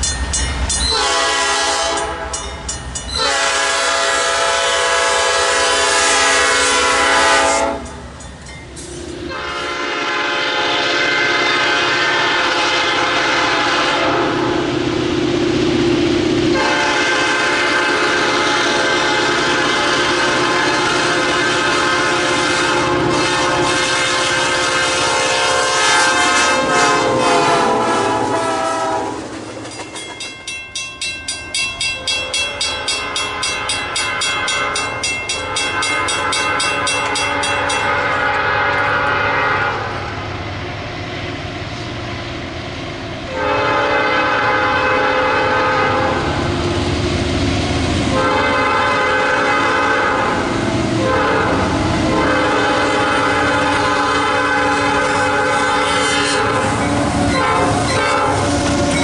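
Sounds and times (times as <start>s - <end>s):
train wheels ticking: 0.0s - 4.8s, 6.9s - 9.2s, 26.3s - 39.2s
train horn blasts: 0.8s - 2.5s, 3.1s - 8.0s, 9.2s - 14.7s, 16.5s - 29.3s, 32.5s - 40.2s, 43.3s - 46.6s, 48.0s - 59.0s.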